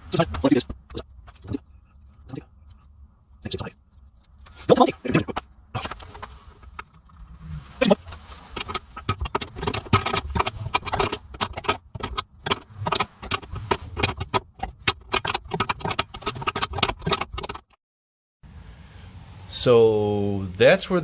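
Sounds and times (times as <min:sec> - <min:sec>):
metallic clicking and rattling: 0:07.9 - 0:17.8.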